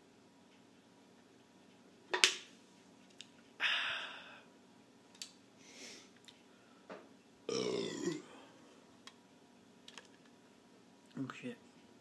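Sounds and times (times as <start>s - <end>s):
soft breath: 5.6s - 7.0s.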